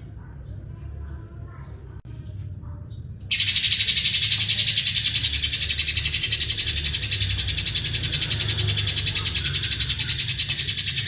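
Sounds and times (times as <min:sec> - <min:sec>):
bird chattering trill: 0:03.3 - 0:11.0.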